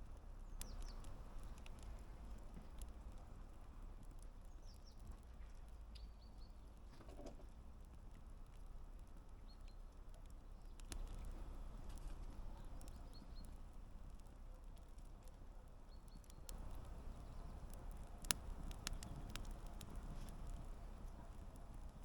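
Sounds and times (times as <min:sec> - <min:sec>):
campfire crackling: 0:00.0 - 0:22.0
small birds chirping: 0:00.4 - 0:01.8, 0:04.4 - 0:05.1, 0:05.8 - 0:06.8, 0:09.3 - 0:09.9, 0:10.5 - 0:15.0, 0:15.7 - 0:22.0.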